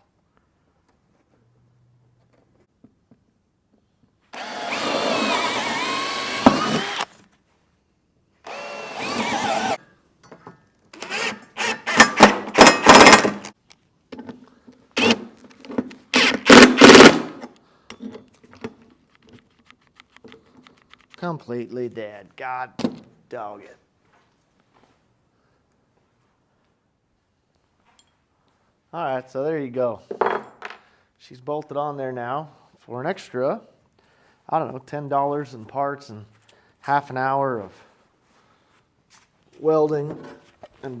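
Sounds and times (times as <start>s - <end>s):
power drill running: 4.4s - 7.2s, 8.4s - 9.8s, 11.0s - 13.5s, 15.0s - 15.3s, 16.2s - 17.3s.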